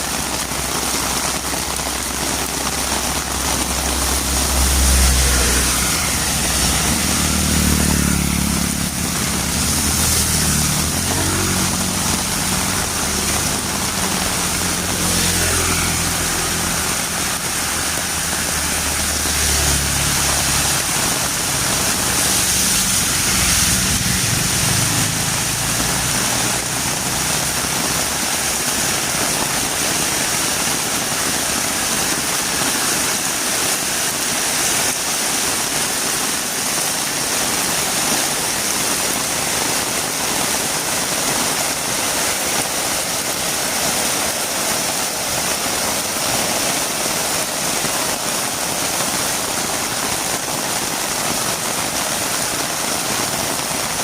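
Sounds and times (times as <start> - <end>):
heavy rain falling: 0.0 - 54.0
vehicle engine hum: 0.4 - 29.6.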